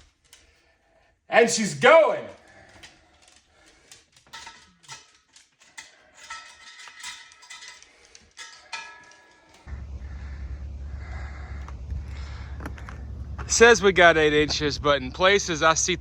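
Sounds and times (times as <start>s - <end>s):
fire crackling and popping: 2.4s - 16.0s
steady low rumble: 9.7s - 16.0s.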